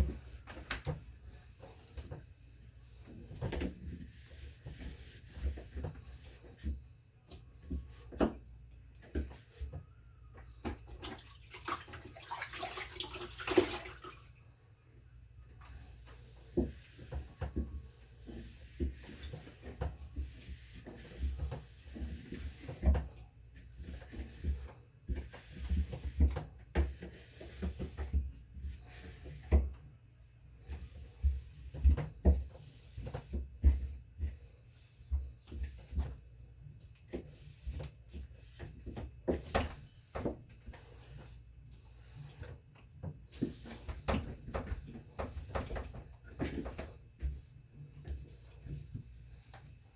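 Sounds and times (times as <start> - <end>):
water splashing and sloshing: 10.6 - 14.4
wet cloth wiping: 15.6 - 22.8.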